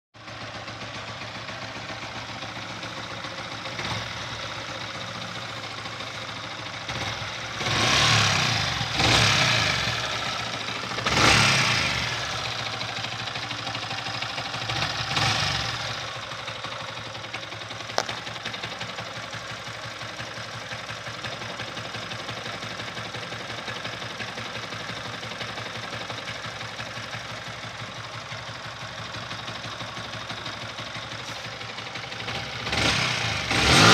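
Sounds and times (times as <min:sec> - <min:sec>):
motorcycle engine idling and revving: 0:00.2 - 0:33.9
clutch rattle: 0:16.6 - 0:19.3.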